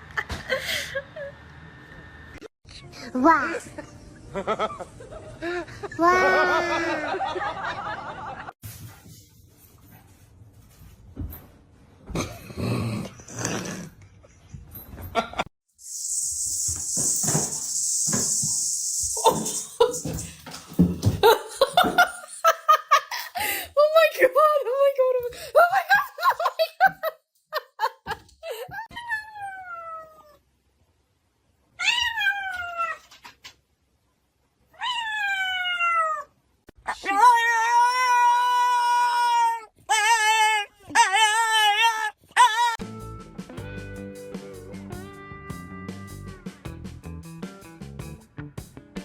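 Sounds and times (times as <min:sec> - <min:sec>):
steady high hiss: 0:15.8 - 0:20.7.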